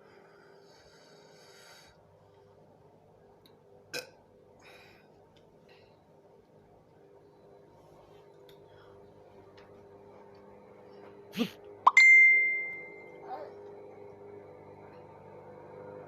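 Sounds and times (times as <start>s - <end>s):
bell-like ding: 11.9s - 13.2s.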